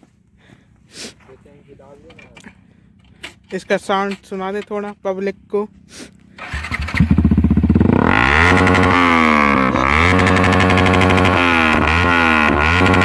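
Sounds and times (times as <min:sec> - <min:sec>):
motorcycle engine starting and revving: 0:06.4 - 0:13.0.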